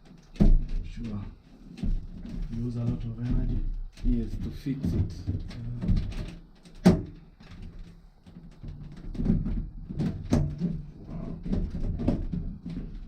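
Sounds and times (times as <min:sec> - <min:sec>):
soft knocks and handling clatter: 0:00.0 - 0:13.0.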